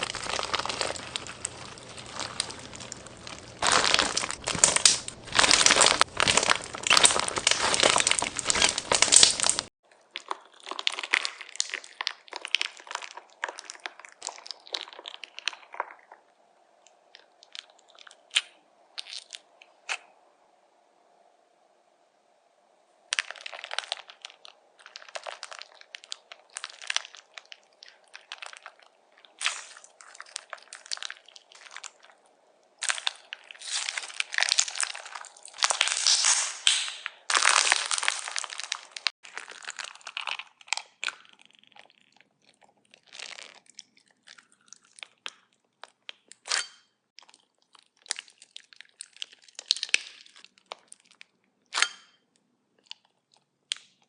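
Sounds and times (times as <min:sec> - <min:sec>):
crunchy slime crackling: 0:00.0 - 0:16.3, 0:23.1 - 0:52.1.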